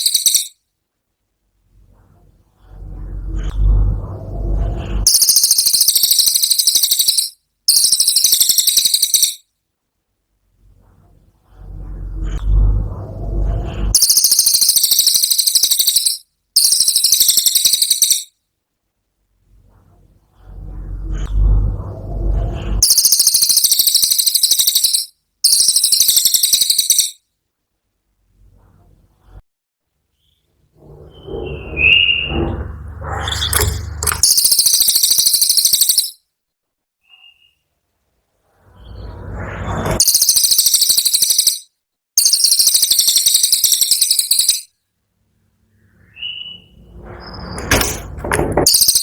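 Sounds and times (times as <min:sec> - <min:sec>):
low rumble: 0:01.7 - 0:05.1, 0:10.6 - 0:14.0, 0:19.6 - 0:22.8, 0:30.7 - 0:34.2.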